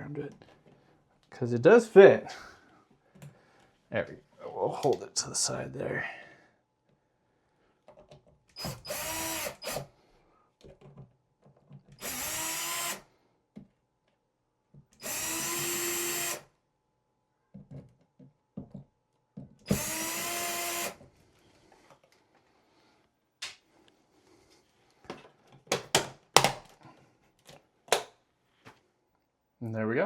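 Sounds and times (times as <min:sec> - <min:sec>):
drill motor whine: 0:08.6 - 0:09.9, 0:12.0 - 0:13.0, 0:15.0 - 0:16.4, 0:19.7 - 0:21.0
handling clicks and knocks: 0:25.0 - 0:28.1.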